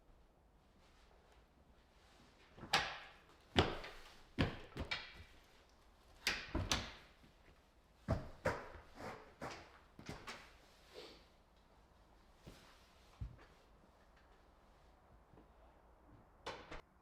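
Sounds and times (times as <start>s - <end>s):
knocks and thuds in small room: 2.6s - 5.4s, 8.1s - 10.5s.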